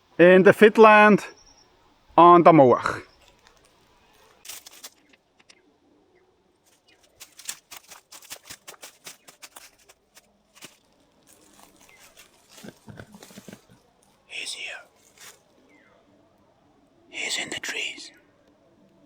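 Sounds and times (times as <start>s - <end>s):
faint clicks and crackles: 3.1s - 5.6s, 6.6s - 15.9s.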